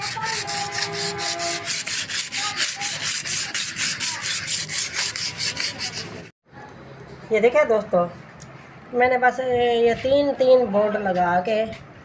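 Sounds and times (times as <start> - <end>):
rapid scrubbing on motor: 0.0 - 6.3.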